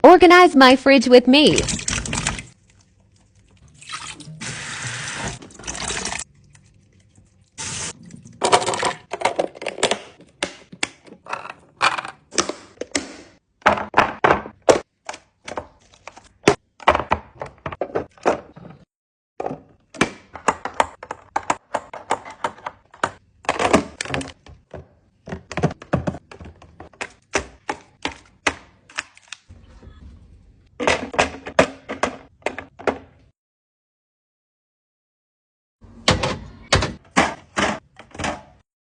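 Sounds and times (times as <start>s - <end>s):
containers knocking on fridge shelves: 13.6s - 14.9s, 19.4s - 28.6s.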